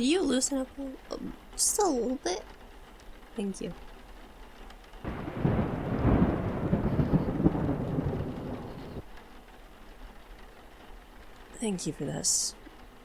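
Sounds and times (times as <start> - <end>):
thunder rumbling: 5.0 - 9.2.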